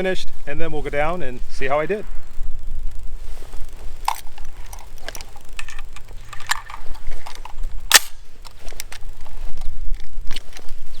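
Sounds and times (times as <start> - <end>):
rifle being handled clicks: 4.0 - 10.8
sharp crack: 7.8 - 8.3.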